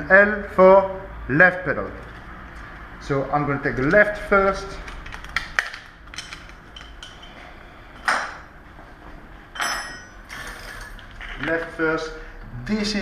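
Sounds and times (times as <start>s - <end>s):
metal tools clinking and knocking: 6.1s - 7.4s, 9.6s - 11.5s
clink with high ring: 9.6s - 10.4s.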